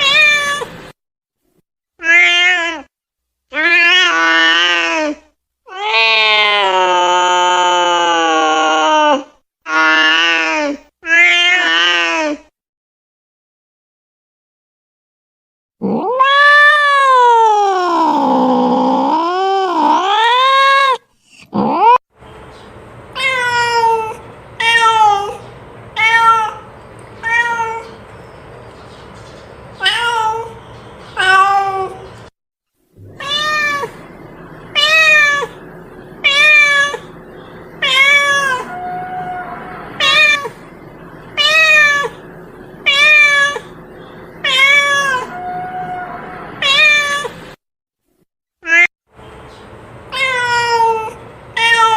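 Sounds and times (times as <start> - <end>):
cat meowing: 0.0 - 0.7, 2.0 - 2.9, 3.5 - 5.1, 5.7 - 12.4, 15.8 - 19.0, 23.1 - 28.0, 29.8 - 30.6, 31.2 - 32.2, 33.0 - 42.2, 42.8 - 43.8, 44.4 - 47.5, 48.6 - 48.9, 50.1 - 51.9.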